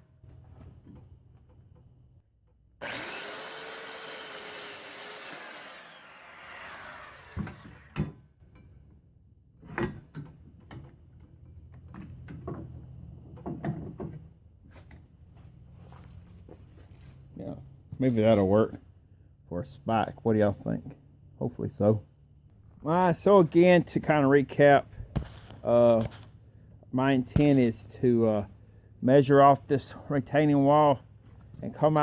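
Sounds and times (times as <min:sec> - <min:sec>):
power saw cutting wood: 0:02.8 - 0:08.1.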